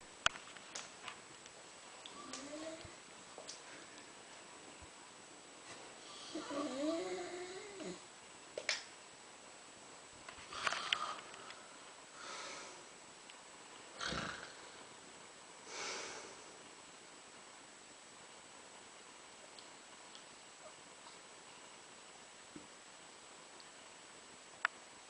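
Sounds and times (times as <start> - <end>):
woman snoring: 6.1 - 8.0, 14.0 - 14.7
sharp snort: 14.0 - 14.6.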